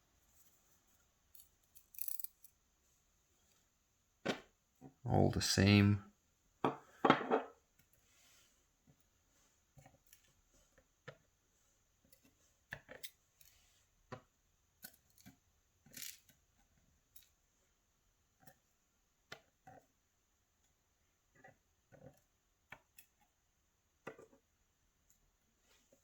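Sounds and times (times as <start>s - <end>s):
small metal parts clicking: 1.3s - 2.5s, 15.9s - 16.3s.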